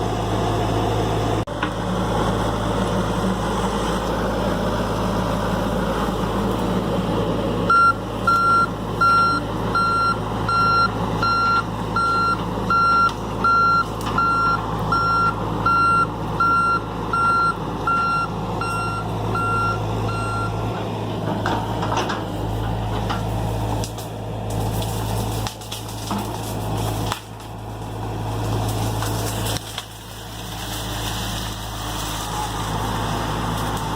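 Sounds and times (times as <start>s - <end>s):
excavator diesel engine running: 0.0s - 33.9s
travel alarm beeping: 7.7s - 20.6s.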